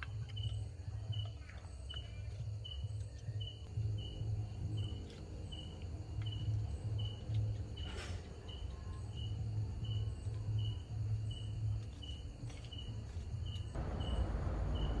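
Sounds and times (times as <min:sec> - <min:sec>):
insect chirping: 0:00.0 - 0:15.0
low hum: 0:13.6 - 0:15.0
rushing noise: 0:13.8 - 0:15.0.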